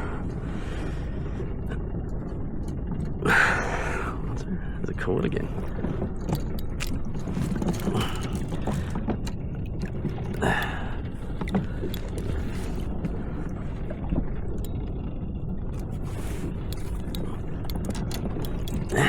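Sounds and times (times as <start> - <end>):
water lapping against kayak hull: 0.0 - 19.0
wind rumble on microphone: 0.0 - 19.0
small knocks and clicks: 5.6 - 10.4, 11.1 - 13.2, 13.9 - 15.1, 15.7 - 19.0.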